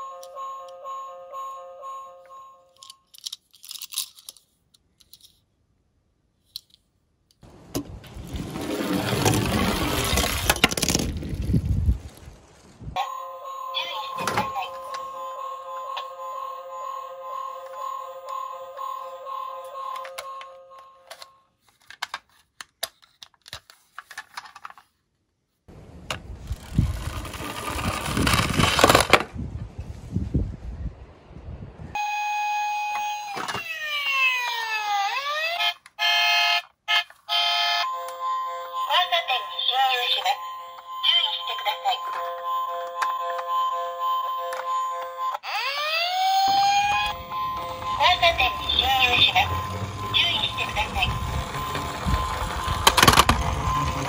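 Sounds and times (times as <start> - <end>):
chiming melody: 0.0 - 2.8, 13.0 - 21.4, 37.8 - 45.3, 46.6 - 54.0
clicks of toy cars handled: 2.8 - 5.4, 6.4 - 6.9, 21.1 - 24.9
toy cars rolling down plastic: 7.6 - 12.2, 26.0 - 29.3, 44.4 - 54.0.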